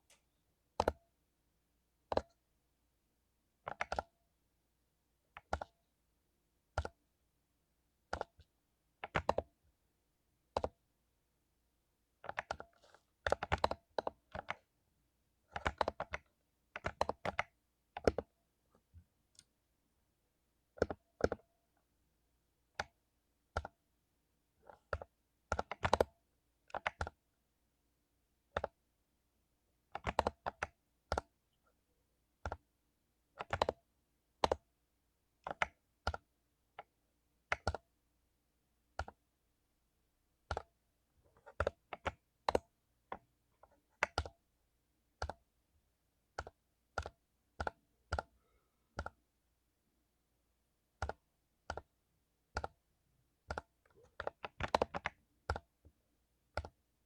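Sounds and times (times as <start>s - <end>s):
mechanical keyboard typing: 3.7s - 4.1s, 5.4s - 5.7s, 8.1s - 9.5s, 12.2s - 14.6s, 15.5s - 18.3s, 20.8s - 21.4s, 24.6s - 26.1s, 26.7s - 27.2s, 28.5s - 28.8s, 29.9s - 31.3s, 33.4s - 33.8s, 34.4s - 34.7s, 35.4s - 36.2s, 41.3s - 44.4s, 51.0s - 51.9s, 52.5s - 52.8s, 53.4s - 55.8s, 56.5s - 56.8s.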